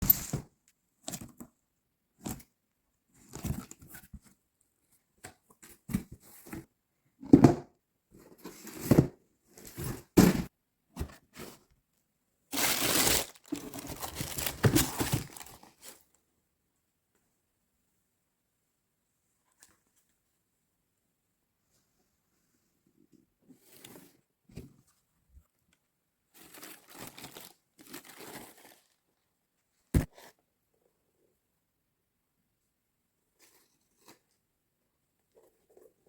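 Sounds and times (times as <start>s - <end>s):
packaging tearing: 12.5s - 15.7s
packaging crinkling: 12.5s - 15.9s
packaging rustling: 12.5s - 16.0s.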